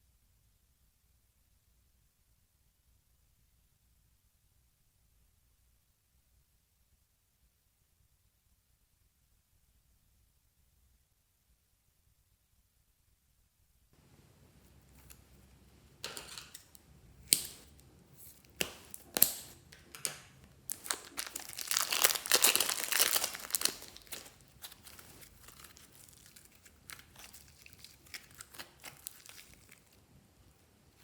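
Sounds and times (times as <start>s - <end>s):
slime squishing with sticky crackles: 14.8s - 30.1s.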